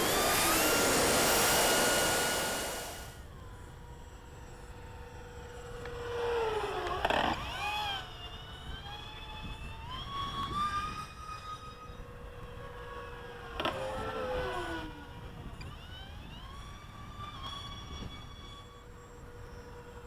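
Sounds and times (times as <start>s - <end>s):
model jet passing rush: 0.0s - 3.2s
model jet whine: 0.0s - 20.0s.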